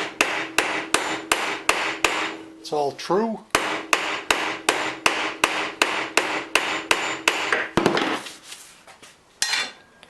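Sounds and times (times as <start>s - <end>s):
hammer striking metal rod: 0.0s - 2.5s, 3.5s - 8.1s.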